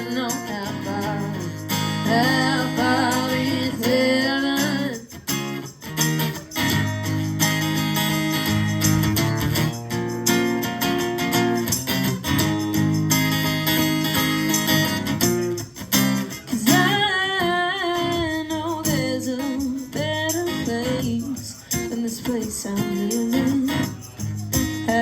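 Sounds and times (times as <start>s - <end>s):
person singing: 0.0s - 5.2s
strummed guitar chords: 0.0s - 25.0s.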